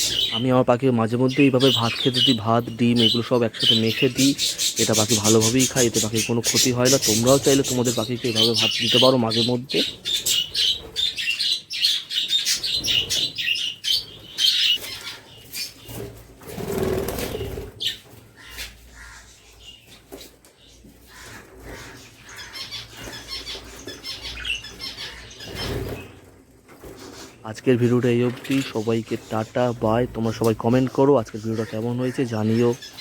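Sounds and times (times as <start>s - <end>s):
budgerigars chirping and chattering: 0.0s - 33.0s
wing flapping: 15.8s - 18.1s, 24.8s - 29.2s.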